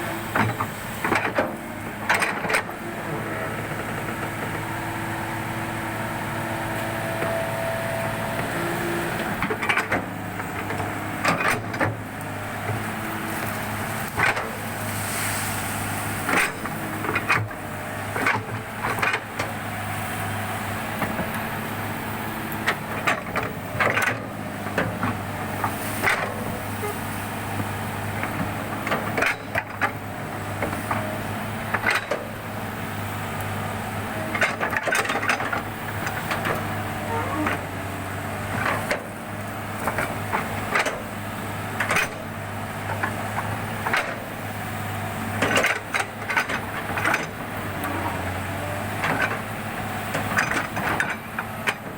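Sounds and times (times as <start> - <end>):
excavator diesel engine running: 0.0 - 51.9.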